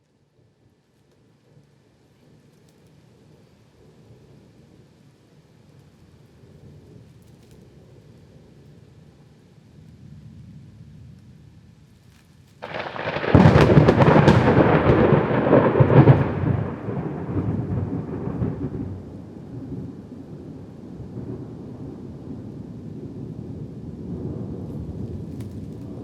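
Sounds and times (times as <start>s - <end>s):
thunderclap crack: 12.6s - 20.1s
rumbling thunder: 12.6s - 26.0s.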